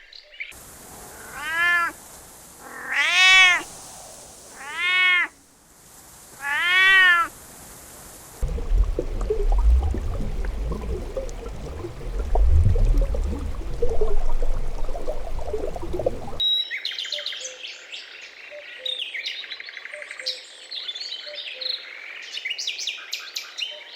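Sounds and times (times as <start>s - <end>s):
low rumbling noise: 8.4s - 16.4s.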